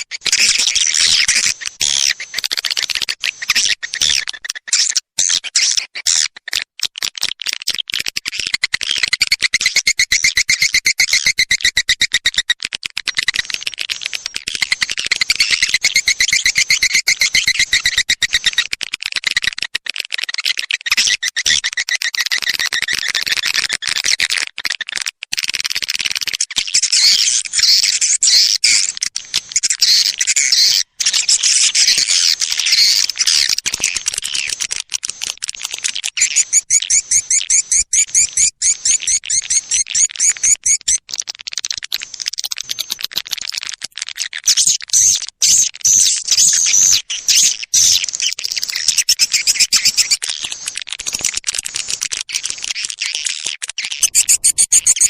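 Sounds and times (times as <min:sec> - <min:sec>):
swiftlet twitters and clicks: 0:28.9 - 0:55.0.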